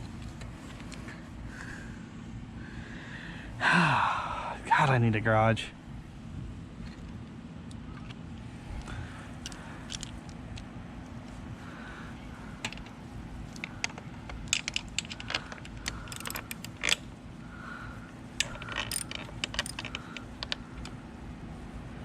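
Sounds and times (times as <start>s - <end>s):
light clicks and clinks of parts: 6.8s - 11.4s, 12.5s - 17.2s, 18.1s - 21.0s.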